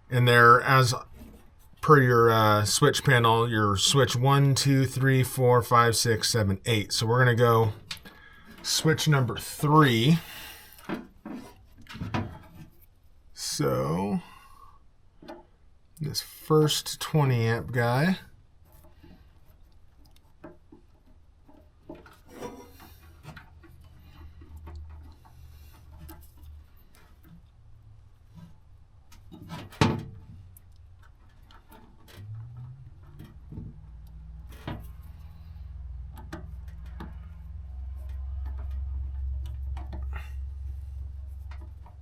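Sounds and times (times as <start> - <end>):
small clicks of wiring work: 19.6 - 20.4.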